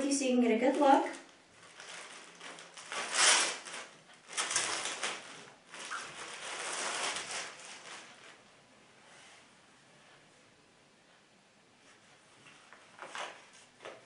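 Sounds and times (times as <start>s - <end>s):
packaging rustling and crinkling: 0.7s - 8.4s.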